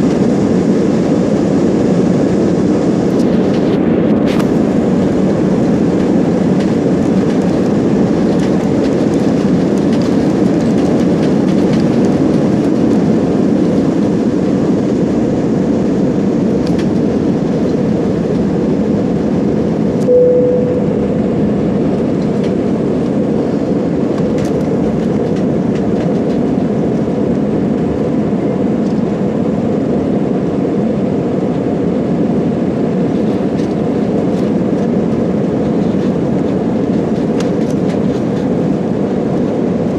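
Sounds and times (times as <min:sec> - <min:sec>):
airliner cabin rumble: 0:00.0 - 0:39.9
short single tone: 0:20.0 - 0:21.6.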